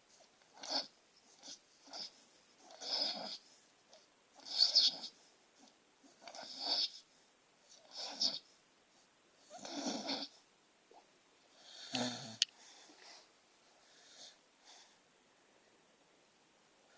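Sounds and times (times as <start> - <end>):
soft breaths: 0.0 - 16.9
dog snoring: 0.5 - 7.1, 7.7 - 8.5, 9.4 - 10.4, 11.6 - 12.4.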